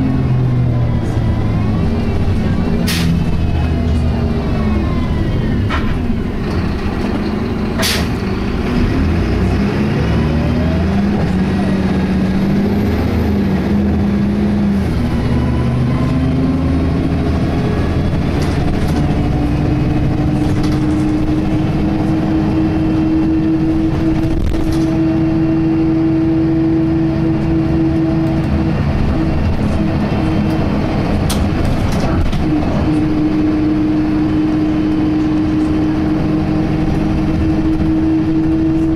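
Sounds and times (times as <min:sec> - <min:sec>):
bus engine and gearbox whine: 0:00.0 - 0:38.9
sharp hiss or clunk: 0:07.8 - 0:08.2.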